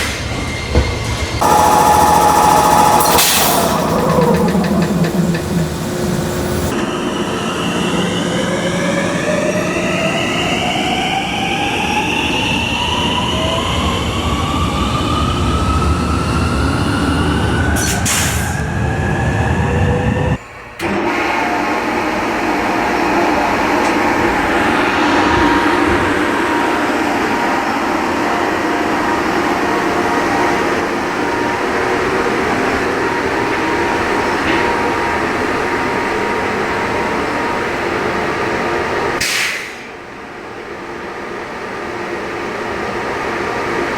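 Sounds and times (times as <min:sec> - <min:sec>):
steady mechanical hum: 0:01.4 - 0:11.6
electric train drive whining: 0:01.4 - 0:17.8, 0:18.6 - 0:37.8
short sharp air hiss: 0:39.2 - 0:39.9.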